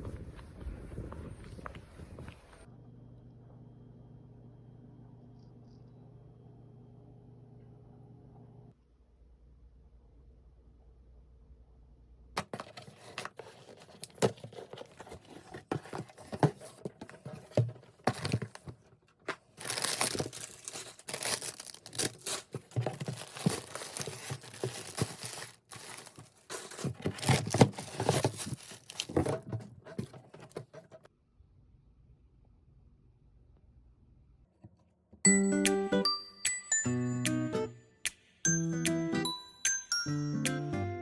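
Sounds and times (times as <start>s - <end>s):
packaging crinkling and tearing: 12.6s - 30.1s.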